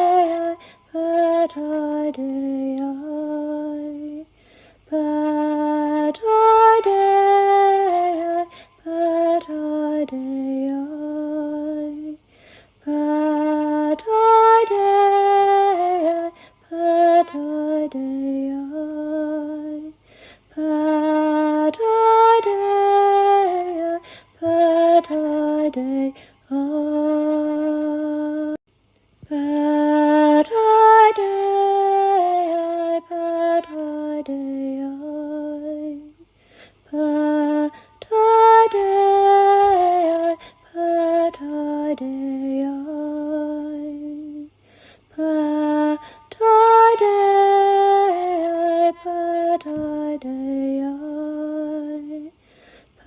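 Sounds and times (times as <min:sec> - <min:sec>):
woman singing meditative chant: 0:00.0 - 0:28.6, 0:29.2 - 0:53.0.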